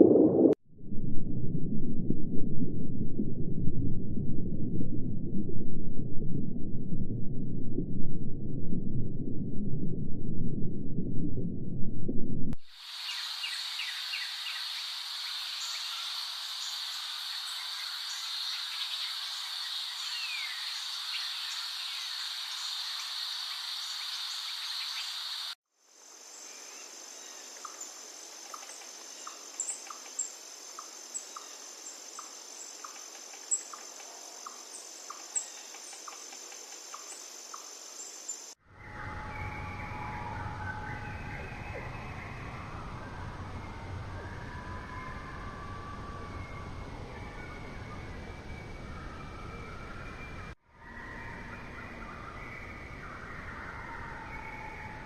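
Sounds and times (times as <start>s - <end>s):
low rumble: 0.0s - 12.6s.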